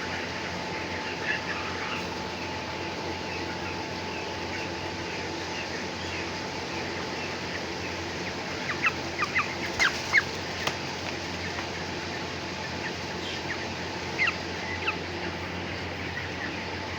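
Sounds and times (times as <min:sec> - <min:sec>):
chicks peeping: 0:00.0 - 0:16.9
steady mechanical hum: 0:00.0 - 0:16.9.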